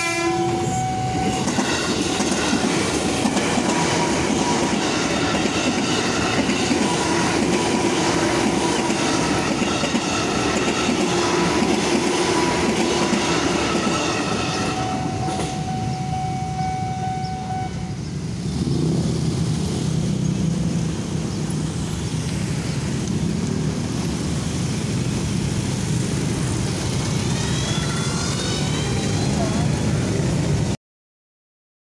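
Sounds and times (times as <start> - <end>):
train whining tones: 0.0 - 18.9, 26.3 - 30.8
road traffic engine rumble: 0.0 - 30.8
train wheels clattering on rails: 1.2 - 16.0.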